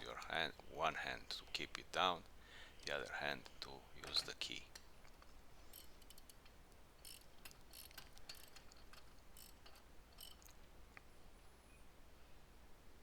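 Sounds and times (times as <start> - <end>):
wrench clicking on bolt: 4.0 - 10.5
faint high chirp: 11.4 - 12.5.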